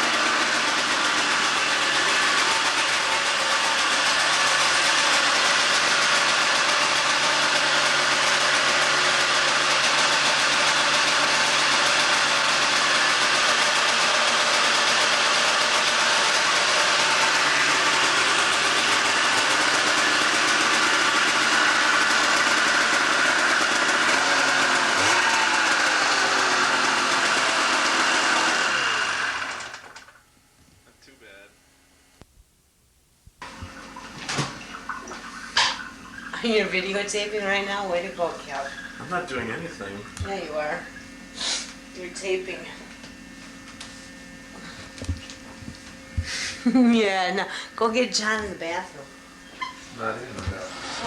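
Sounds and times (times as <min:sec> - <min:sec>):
vehicle engine running: 0:00.0 - 0:29.6, 0:35.2 - 0:43.1.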